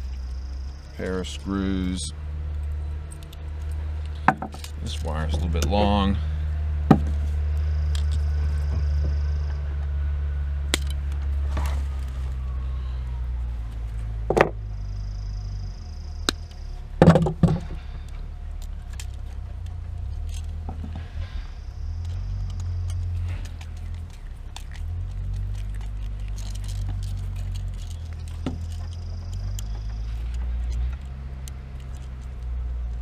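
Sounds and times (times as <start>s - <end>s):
steady low hum: 0.0s - 33.0s
metallic clicks and snips: 22.0s - 33.0s.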